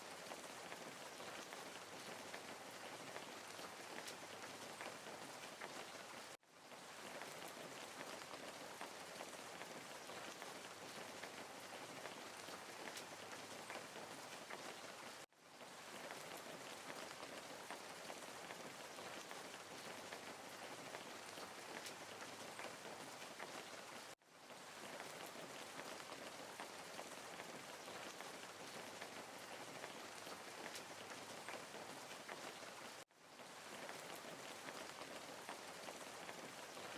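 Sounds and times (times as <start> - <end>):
rain drops ticking: 0.0 - 36.9
steady rain hiss: 0.0 - 36.9.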